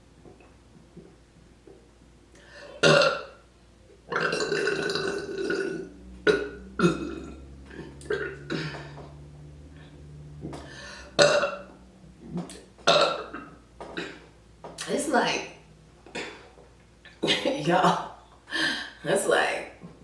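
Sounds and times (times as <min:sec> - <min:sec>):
woman burping: 0:02.8 - 0:03.4, 0:04.1 - 0:09.1, 0:10.8 - 0:11.7, 0:12.3 - 0:14.3, 0:16.1 - 0:18.2.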